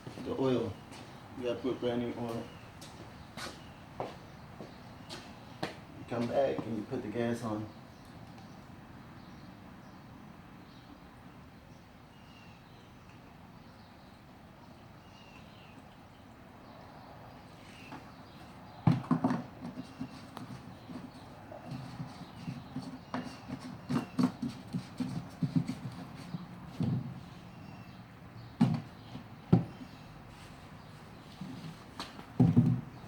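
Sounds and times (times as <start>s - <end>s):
knocks and clunks on lawnmower: 17.9s - 29.9s, 32.0s - 33.0s.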